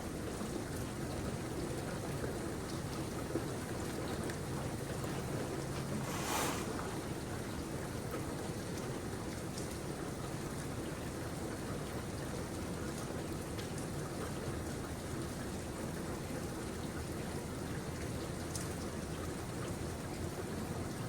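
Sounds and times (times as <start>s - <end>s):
steady rain hiss: 2.4s - 8.9s.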